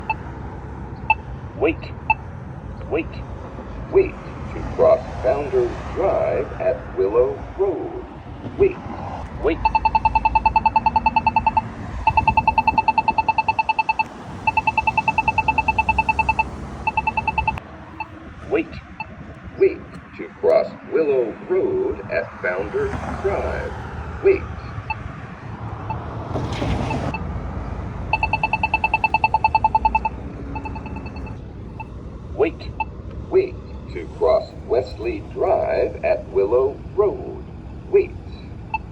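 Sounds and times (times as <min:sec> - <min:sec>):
pedestrian signal rapid beeps: 0:00.0 - 0:00.3, 0:01.0 - 0:02.3, 0:09.4 - 0:18.2, 0:28.0 - 0:31.9, 0:32.6 - 0:32.9, 0:38.4 - 0:38.9
traffic rumble: 0:00.0 - 0:38.9.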